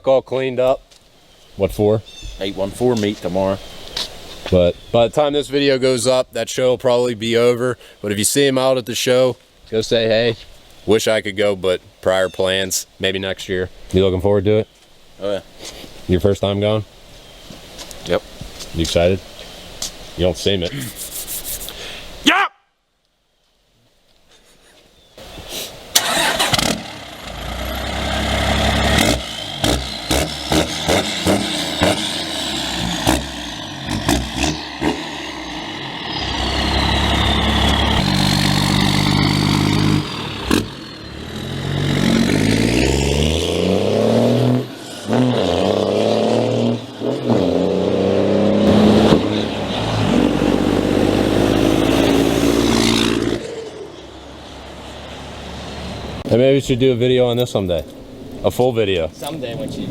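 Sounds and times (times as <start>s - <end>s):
diesel engine revving: 26.0s - 56.3s.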